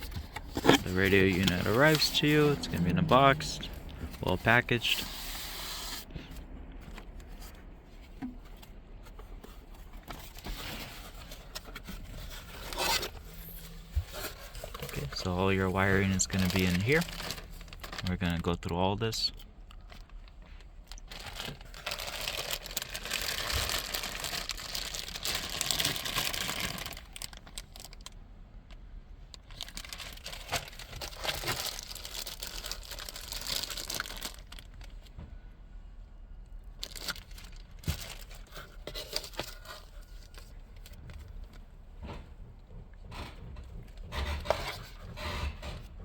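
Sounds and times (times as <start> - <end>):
plastic packaging crinkling: 0.0 - 6.0, 10.2 - 18.6, 19.7 - 28.2, 29.4 - 35.0, 36.8 - 41.0.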